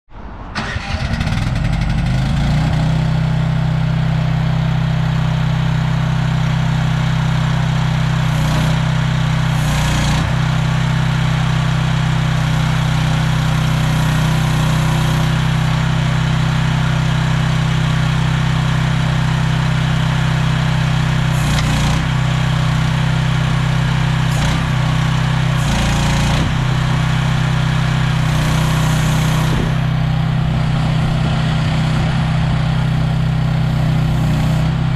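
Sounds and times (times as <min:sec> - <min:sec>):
excavator engine running: 0:00.1 - 0:34.9.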